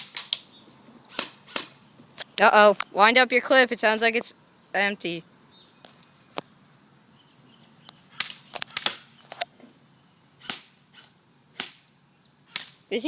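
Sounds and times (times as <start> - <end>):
airsoft gun shots: 0.0 - 0.5, 1.1 - 1.8, 8.1 - 9.2, 10.4 - 11.9, 12.5 - 12.8.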